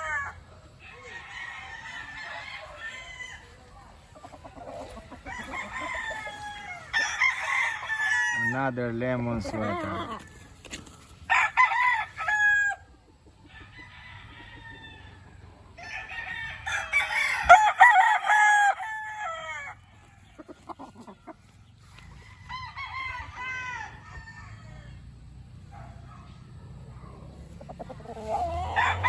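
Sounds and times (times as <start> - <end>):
roosters crowing: 0.0 - 25.8, 27.4 - 29.0
chickens clucking: 2.6 - 7.1, 8.5 - 11.3, 20.0 - 22.4, 25.8 - 29.0.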